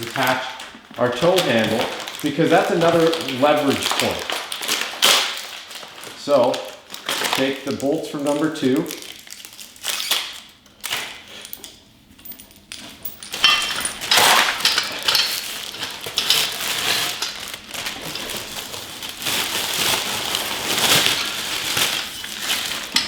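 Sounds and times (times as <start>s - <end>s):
plastic bag crinkling: 0.0s - 11.6s, 12.2s - 23.0s
metal hardware clinking: 11.4s - 16.5s.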